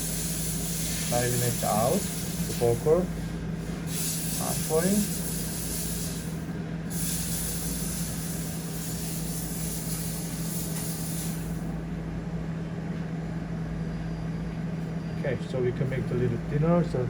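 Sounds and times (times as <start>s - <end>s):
hiss: 0.0s - 3.0s, 3.9s - 11.7s
steady machine hum: 0.0s - 17.0s.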